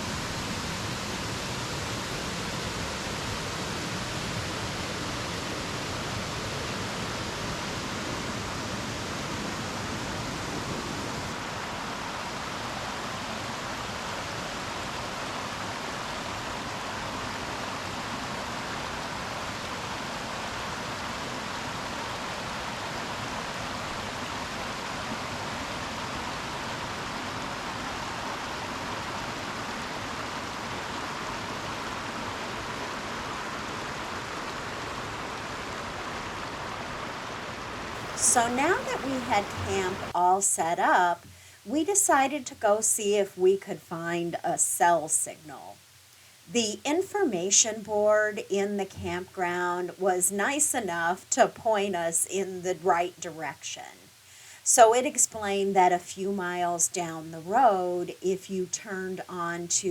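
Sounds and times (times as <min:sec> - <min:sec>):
creek water rushing over rocks: 0:00.0 - 0:40.2.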